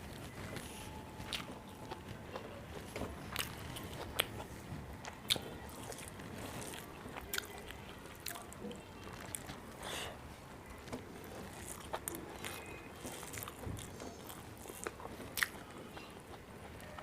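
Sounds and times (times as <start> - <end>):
chewing food: 0.1 - 9.9, 10.7 - 17.0.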